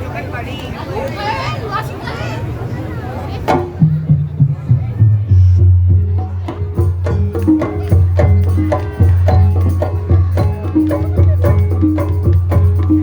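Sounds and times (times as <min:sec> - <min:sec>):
gamelan music: 0:03.6 - 0:13.0.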